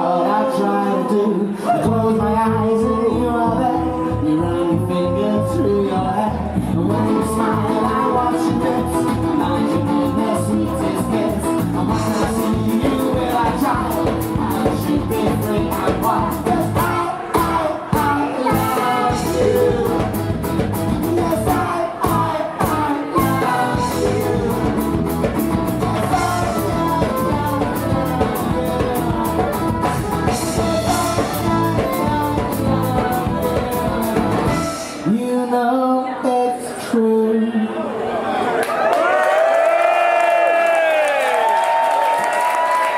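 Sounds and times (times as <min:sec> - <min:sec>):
folk-rock band playing: 0:01.6 - 0:35.5
steady drum beat: 0:10.9 - 0:34.7.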